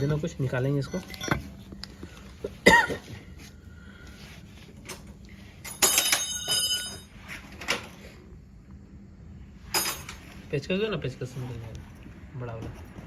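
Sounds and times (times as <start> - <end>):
ringing metallic clang: 5.7 - 7.2.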